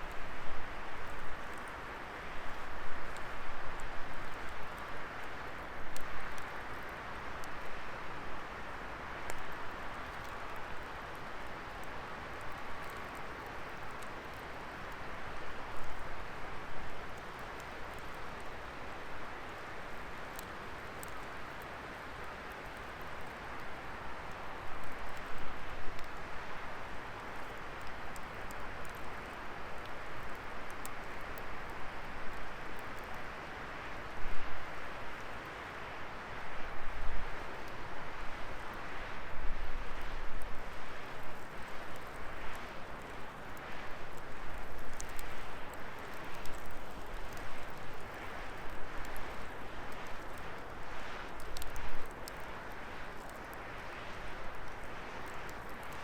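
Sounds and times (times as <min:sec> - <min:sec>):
wood crackling and popping: 0:08.6 - 0:33.4, 0:36.7 - 0:56.0.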